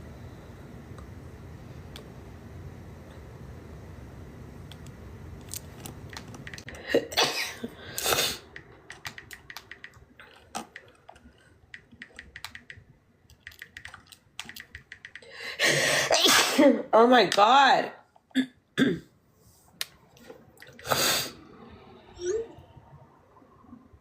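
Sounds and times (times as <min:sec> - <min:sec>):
woman sneezing: 0:06.9 - 0:08.4, 0:15.9 - 0:16.9.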